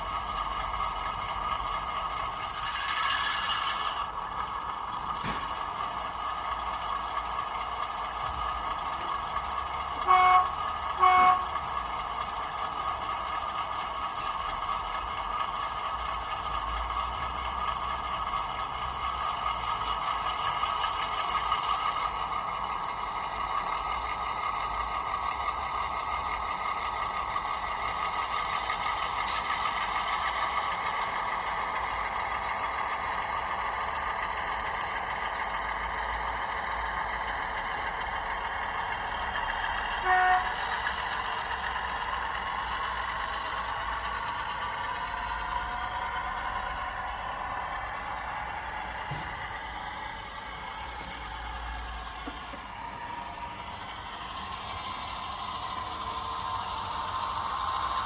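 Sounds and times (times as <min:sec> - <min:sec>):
model diesel locomotive engine sound: 0:00.0 - 0:58.0
locomotive horn toots: 0:09.9 - 0:11.9, 0:40.0 - 0:40.8.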